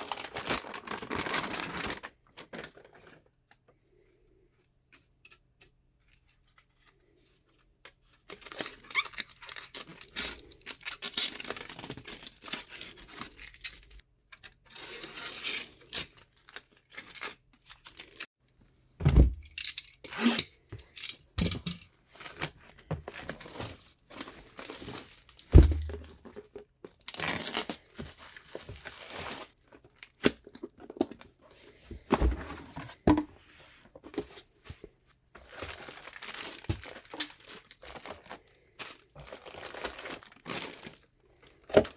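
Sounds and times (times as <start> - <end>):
plastic and paper crinkling: 0.0 - 3.6, 22.1 - 31.3, 34.0 - 41.9.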